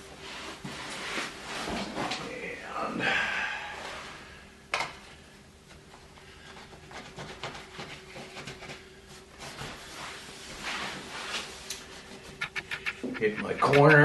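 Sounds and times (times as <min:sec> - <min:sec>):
sharp click: 0:12.4 - 0:14.0.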